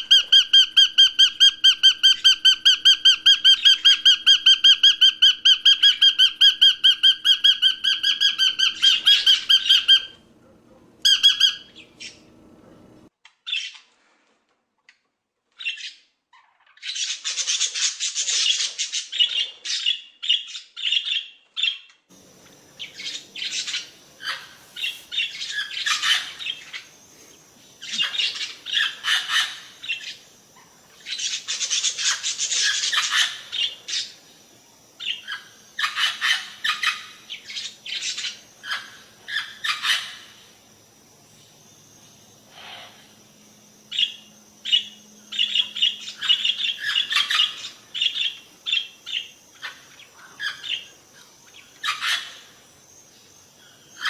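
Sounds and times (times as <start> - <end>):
bird chirping and squawking: 0.0 - 10.2, 11.0 - 12.5, 22.8 - 26.9, 27.8 - 30.2, 43.9 - 50.9, 51.5 - 52.5.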